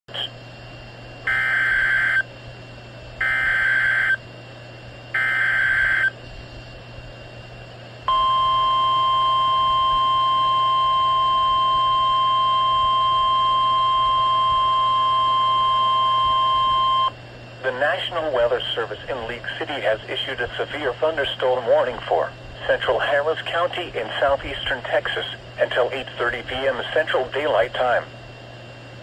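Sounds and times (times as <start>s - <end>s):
steady warning alarm tone: 1.2s - 2.3s, 3.2s - 4.3s, 5.1s - 6.2s, 8.1s - 17.2s.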